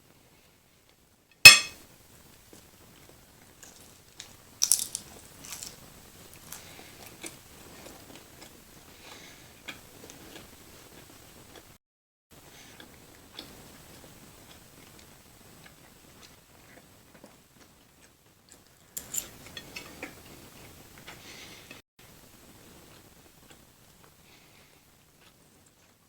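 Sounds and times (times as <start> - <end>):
soft chewing: 2.5 - 11.8, 12.6 - 21.8, 22.7 - 26.0
crisp crunching bites: 3.6 - 7.4
sharp food snap: 4.6 - 5.8.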